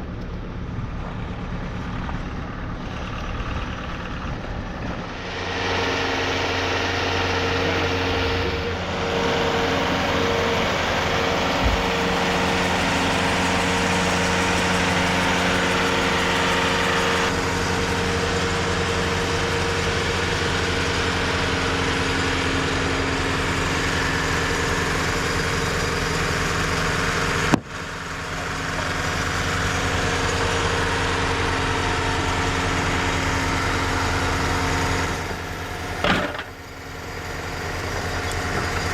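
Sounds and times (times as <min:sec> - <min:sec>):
sawmill engine running: 0:00.0 - 0:38.9.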